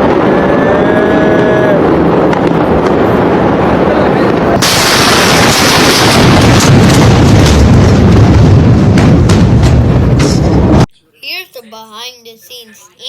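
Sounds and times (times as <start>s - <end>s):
explosion roar: 0.0s - 10.9s
sharp crackles: 2.0s - 10.9s.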